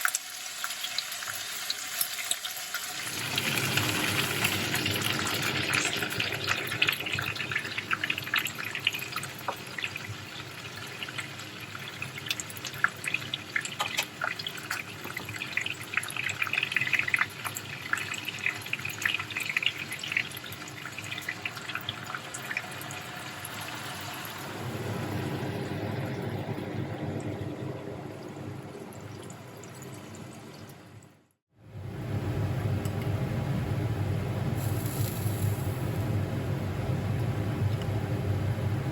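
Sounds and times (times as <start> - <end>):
water running into sink: 0.0 - 24.6.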